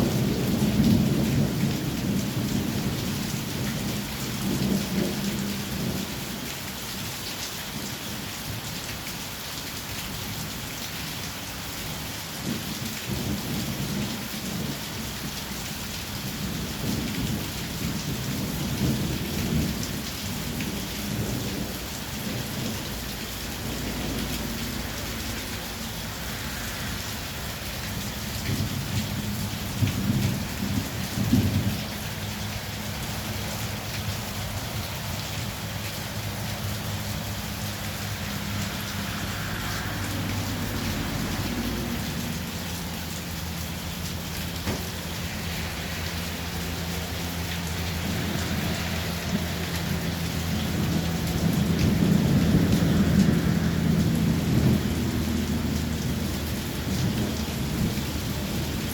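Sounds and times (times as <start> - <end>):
thunder rumbling: 0.0 - 6.4, 12.4 - 58.9
heavy rain: 0.0 - 58.9.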